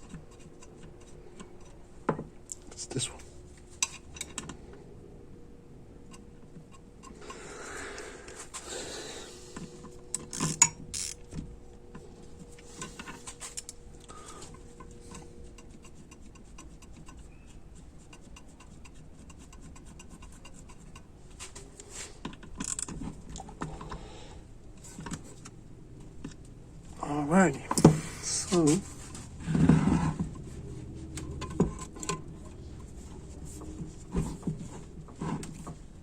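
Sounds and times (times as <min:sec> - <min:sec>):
small metal parts clinking: 0:10.1 - 0:11.2.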